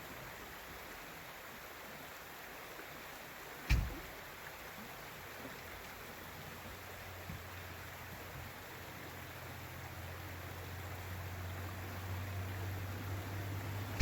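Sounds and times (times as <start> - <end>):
creek water flowing: 0.0 - 14.0
sharp thump: 3.7 - 4.1.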